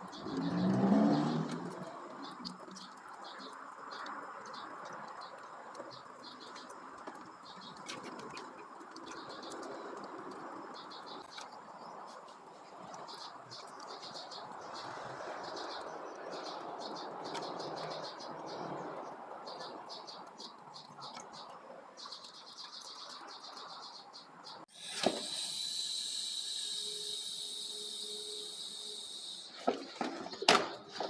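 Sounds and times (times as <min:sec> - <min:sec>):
high hiss with whistling tone: 0:24.7 - 0:29.6
insects chirping in trills: 0:24.7 - 0:29.6.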